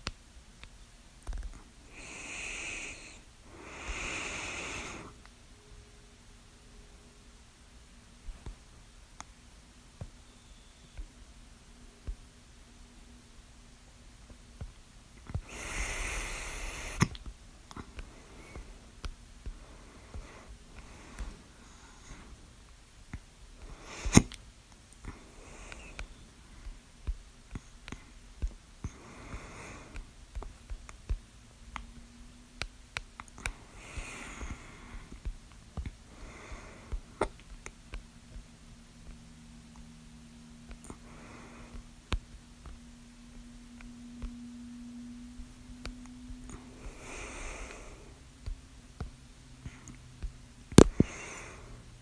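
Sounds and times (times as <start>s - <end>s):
breathy hiss: 1.6s - 6.1s, 15.2s - 31.2s, 33.2s - 38.3s, 40.0s - 52.0s.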